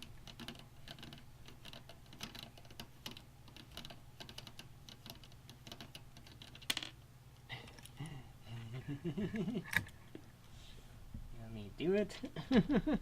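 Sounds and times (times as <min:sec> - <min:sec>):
small plastic parts clicking: 0:00.0 - 0:07.0
low steady hum: 0:00.0 - 0:13.0.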